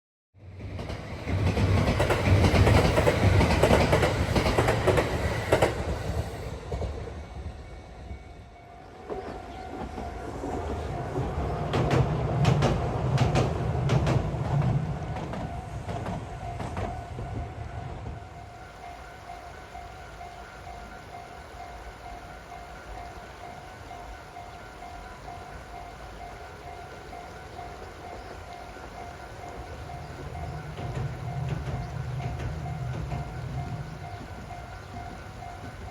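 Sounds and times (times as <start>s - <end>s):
train wheels rumbling on rail: 0.4s - 35.9s
wheels clicking over rail joints: 0.7s - 7.0s, 9.0s - 17.4s, 22.8s - 35.9s.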